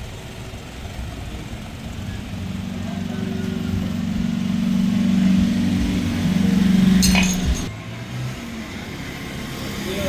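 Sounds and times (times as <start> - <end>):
motorcycle engine running: 0.0 - 7.7
metallic clink: 6.9 - 7.7.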